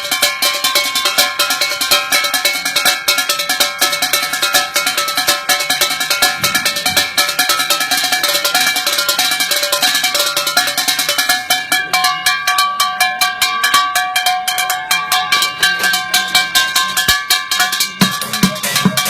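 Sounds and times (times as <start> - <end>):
strikes on pitched ringing objects: 0.0 - 19.0
deep drum beats: 17.1 - 19.0.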